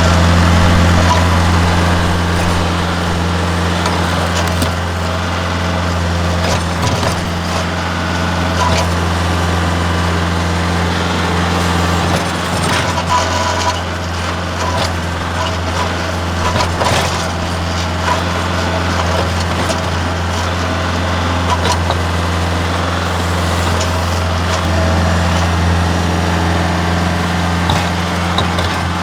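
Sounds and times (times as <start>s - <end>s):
loader bucket knocking on concrete: 0.0s - 4.9s, 27.4s - 29.0s
tractor engine running: 0.0s - 29.0s.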